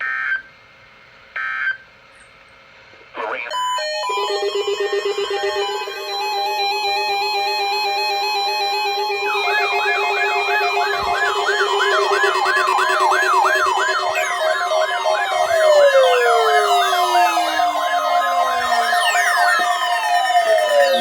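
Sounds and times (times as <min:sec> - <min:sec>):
rapid warbling siren: 0:03.5 - 0:21.0
steady alert tone: 0:03.5 - 0:21.0
falling whistle-like sweeps: 0:05.4 - 0:21.0.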